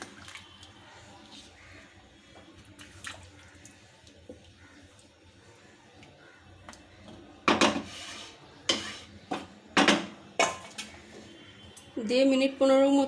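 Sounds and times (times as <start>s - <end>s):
spoon scraping metal pot: 7.6s - 9.3s.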